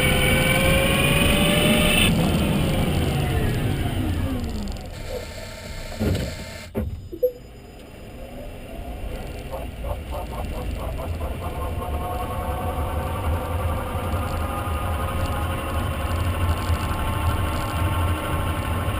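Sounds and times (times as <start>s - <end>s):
electric motor whining: 2.1s - 6.8s
sharp knocks: 6.0s - 7.1s.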